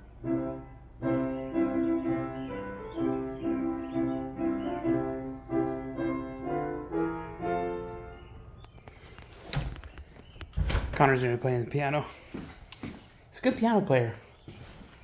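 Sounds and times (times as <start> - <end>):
piano chords: 0.0 - 9.0.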